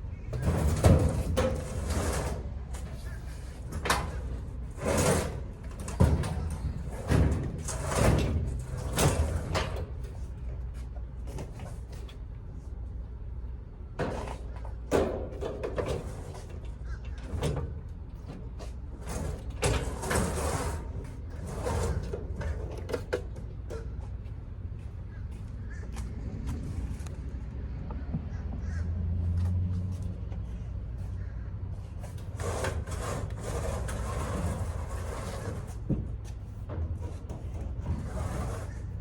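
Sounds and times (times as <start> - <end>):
appliances and doors banging: 3.7 - 10.0.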